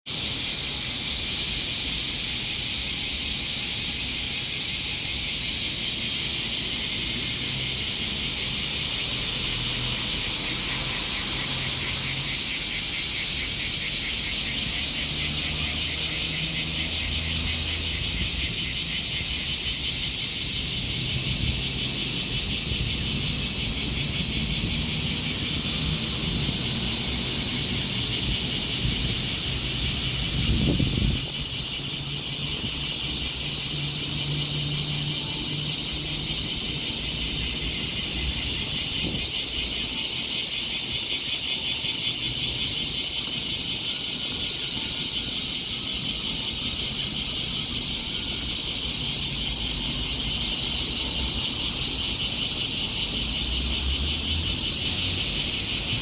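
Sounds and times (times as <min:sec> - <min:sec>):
cicadas buzzing: 0:00.0 - 0:56.0.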